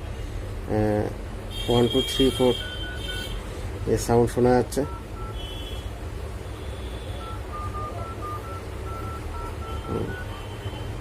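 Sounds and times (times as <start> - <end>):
phone keypad beeps: 2.6 - 3.3, 4.8 - 5.4, 7.2 - 10.7.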